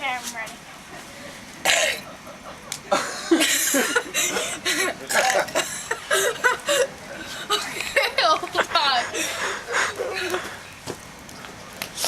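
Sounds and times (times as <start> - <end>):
harsh burp: 1.6 - 2.1, 5.0 - 5.7
person laughing: 2.0 - 10.6.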